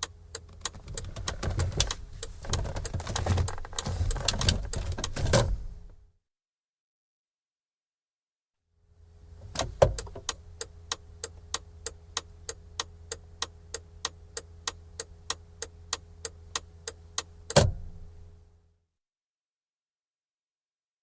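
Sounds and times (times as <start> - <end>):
low engine hum: 0.0 - 6.0.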